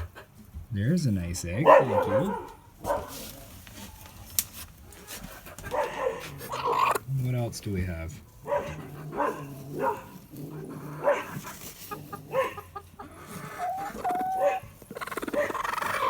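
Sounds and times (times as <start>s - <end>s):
hen growling and screeching: 6.0s - 7.1s, 8.6s - 16.0s.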